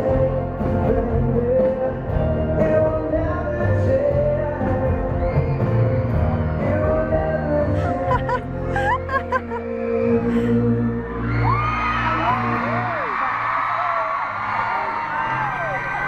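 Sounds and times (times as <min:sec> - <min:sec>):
men singing: 0:00.0 - 0:11.4
live band playing pop ballad: 0:00.0 - 0:13.1.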